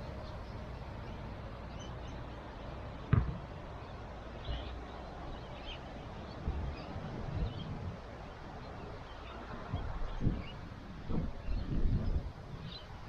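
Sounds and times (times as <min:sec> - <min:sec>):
low thumps: 0:03.1 - 0:03.5.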